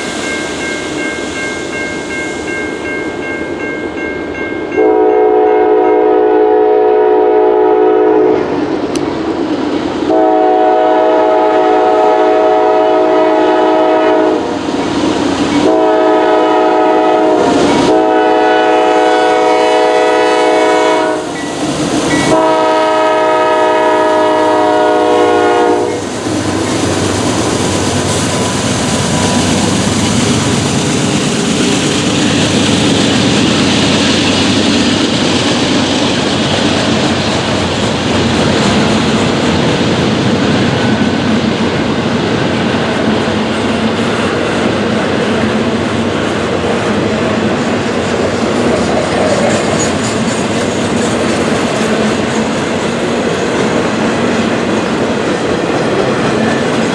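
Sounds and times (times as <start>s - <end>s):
locomotive air horn: 4.8s - 8.4s, 10.1s - 14.5s, 15.6s - 21.4s, 22.2s - 26.1s
train wheels clacking over rails: 10.1s - 56.9s.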